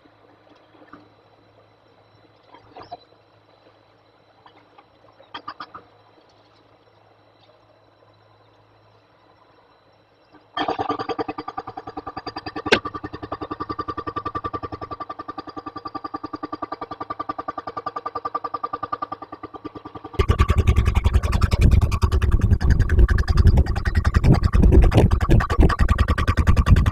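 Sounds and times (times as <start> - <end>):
steady whine: 20.1 - 26.9.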